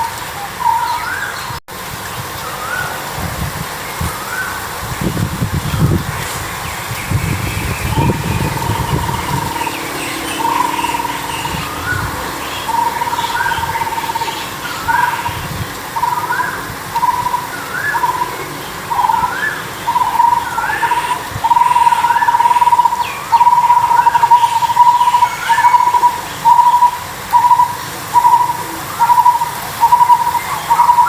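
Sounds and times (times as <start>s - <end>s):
bird chirping: 6.6s - 15.4s.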